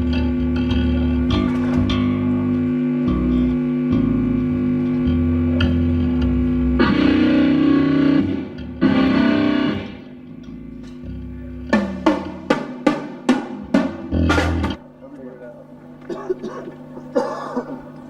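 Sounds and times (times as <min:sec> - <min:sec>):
distorted electric guitar chords: 0:00.0 - 0:15.0
single drum hits: 0:11.8 - 0:14.8.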